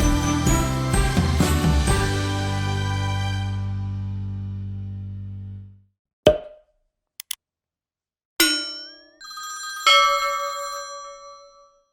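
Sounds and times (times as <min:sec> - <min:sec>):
quick clicks: 0:07.2 - 0:07.4
bell-like chimes: 0:08.5 - 0:11.9.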